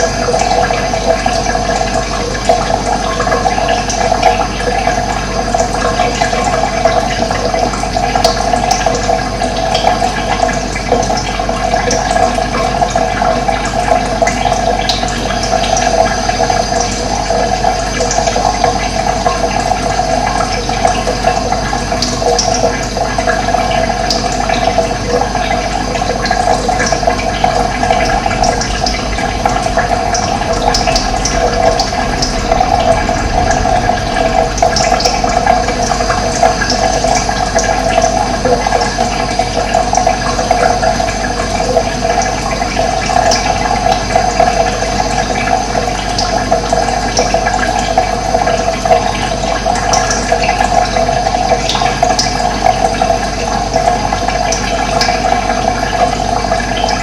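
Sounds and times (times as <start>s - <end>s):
running water: 0.0s - 57.0s.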